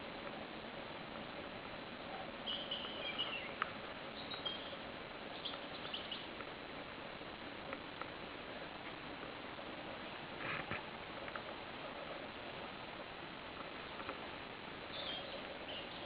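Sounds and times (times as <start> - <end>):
forest background hiss: 0.0 - 16.0
small birds chirping: 0.0 - 16.0.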